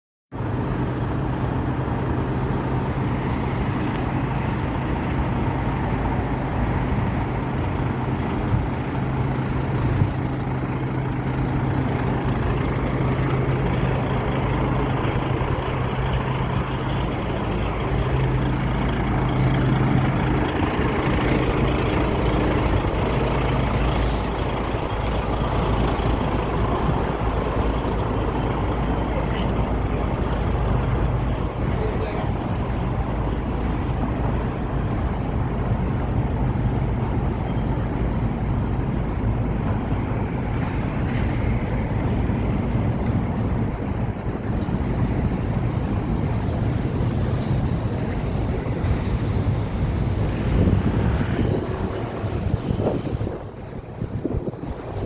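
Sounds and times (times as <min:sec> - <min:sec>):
vehicle engine humming: 0:00.4 - 0:55.0
short hiss: 0:23.8 - 0:24.5.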